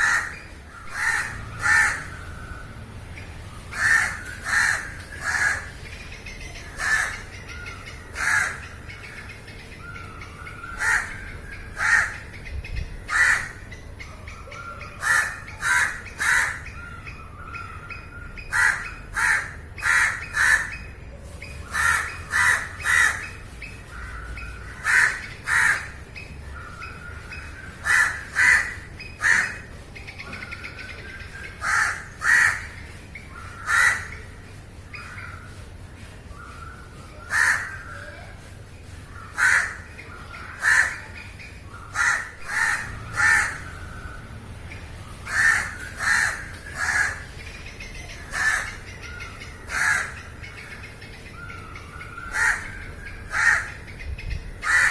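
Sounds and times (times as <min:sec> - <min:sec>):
crows cawing: 0:00.0 - 0:02.7, 0:03.7 - 0:05.8, 0:06.7 - 0:08.8, 0:10.3 - 0:12.3, 0:13.1 - 0:13.7, 0:15.0 - 0:17.0, 0:18.5 - 0:20.8, 0:21.6 - 0:26.0, 0:27.5 - 0:29.7, 0:31.6 - 0:32.8, 0:33.5 - 0:34.3, 0:37.3 - 0:37.9, 0:39.2 - 0:41.1, 0:41.9 - 0:44.2, 0:45.3 - 0:47.3, 0:48.3 - 0:49.0, 0:49.6 - 0:50.4, 0:52.2 - 0:53.8, 0:54.6 - 0:54.9.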